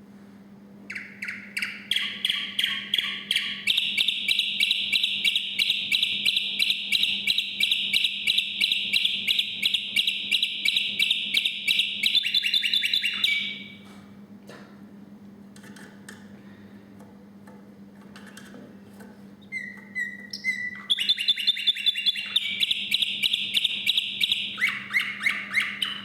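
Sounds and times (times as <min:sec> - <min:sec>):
canary singing trills: 0:00.9 - 0:13.8, 0:19.4 - 0:26.0.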